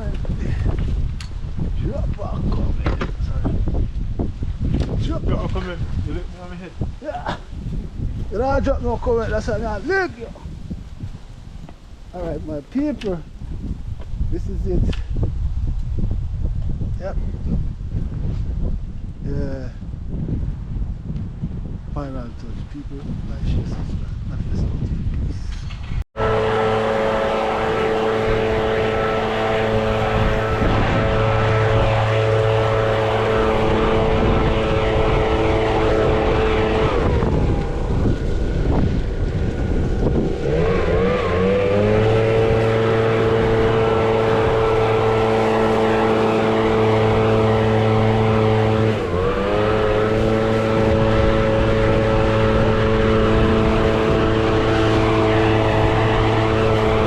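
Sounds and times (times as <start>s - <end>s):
engine running: 26.2s - 57.0s.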